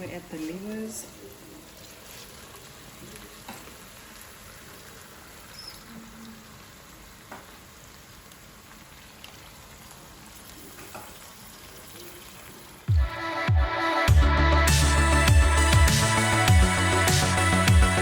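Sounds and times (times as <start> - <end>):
livers sizzling in a pan: 0.0 - 12.9.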